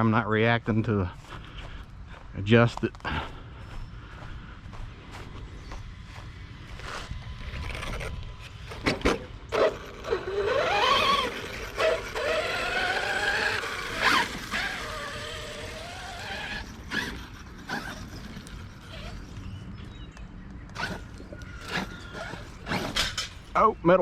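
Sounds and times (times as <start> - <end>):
electric motor whining: 4.7 - 23.6.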